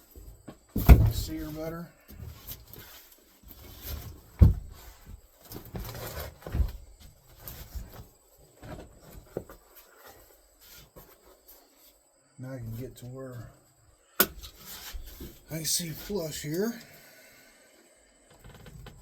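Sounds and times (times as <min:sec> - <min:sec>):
scraping and rustling: 0:02.2 - 0:12.0, 0:14.4 - 0:15.5.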